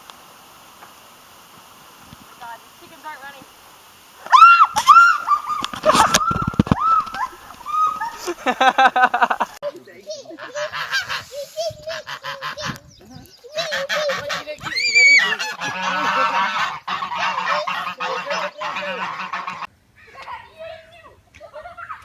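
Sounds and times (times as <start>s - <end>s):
geese honking: 9.9s - 19.7s.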